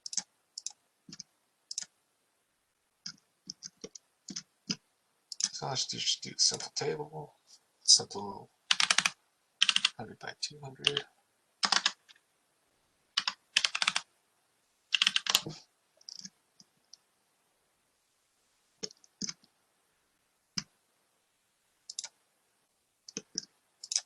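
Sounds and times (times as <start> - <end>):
computer keyboard typing: 0.0 - 1.9, 3.0 - 5.6, 8.7 - 10.0, 10.8 - 11.0, 11.6 - 12.2, 13.2 - 14.1, 14.9 - 16.3, 18.8 - 19.5, 21.9 - 22.2, 23.1 - 24.0.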